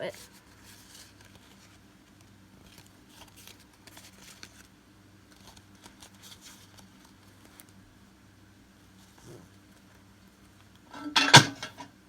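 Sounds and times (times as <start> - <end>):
card packs rustling and crinkling: 0.3 - 4.7, 5.3 - 7.8
low steady hum: 9.8 - 12.0.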